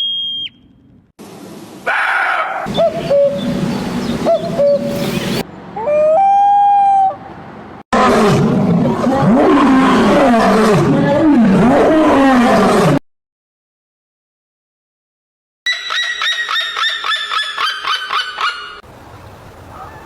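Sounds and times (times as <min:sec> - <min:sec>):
swooping animal calls: 0:01.9 - 0:07.2, 0:15.7 - 0:18.8.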